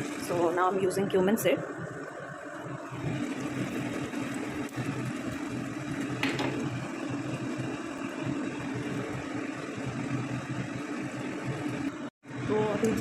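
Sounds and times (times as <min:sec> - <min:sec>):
seeds sizzling in oil: 0:02.4 - 0:13.0.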